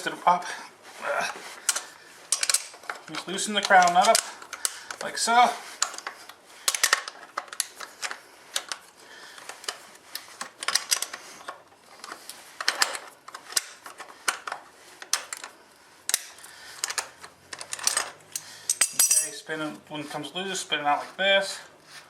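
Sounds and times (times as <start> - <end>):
metallic clicks of steel wrenches: 1.7 - 5.1, 12.6 - 19.5.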